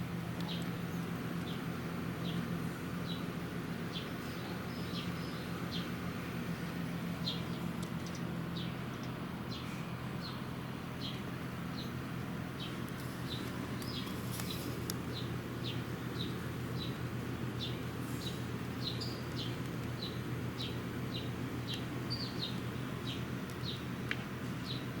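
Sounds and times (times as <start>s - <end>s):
steady low hum: 0.0s - 25.0s
bird chirping: 3.9s - 12.0s, 12.6s - 23.9s, 24.6s - 25.0s.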